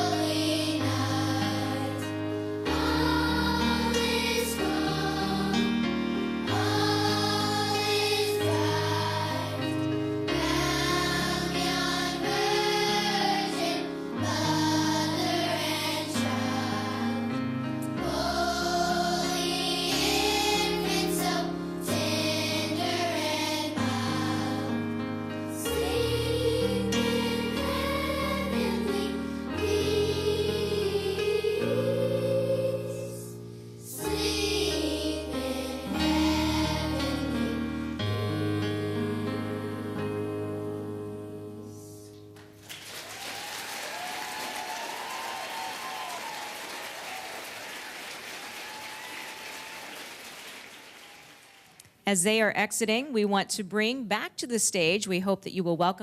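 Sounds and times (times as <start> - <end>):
choir singing: 0.0 - 42.1.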